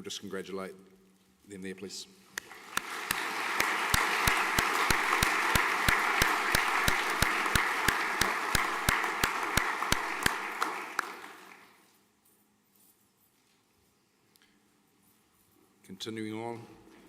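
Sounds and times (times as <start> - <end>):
audience applauding: 2.4 - 11.8
sharp regular claps: 2.4 - 11.8.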